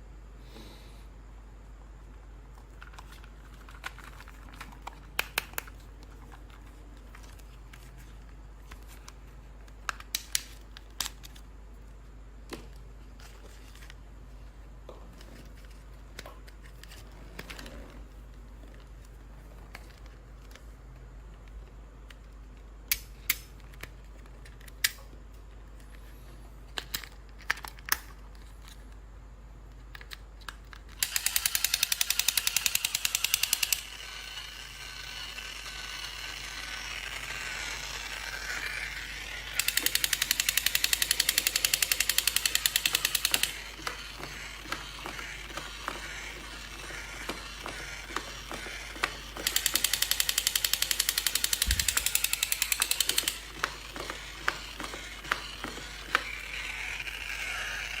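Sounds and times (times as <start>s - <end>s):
plastic toy clicks: 2.8s - 5.8s, 9.8s - 11.4s, 29.9s - 58.0s
rapid ratchet-like clicking: 31.0s - 58.0s.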